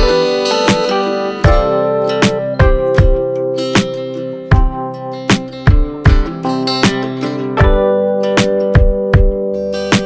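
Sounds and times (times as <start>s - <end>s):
acoustic guitar music: 0.0s - 10.0s
sharp guitar strums: 0.0s - 10.0s.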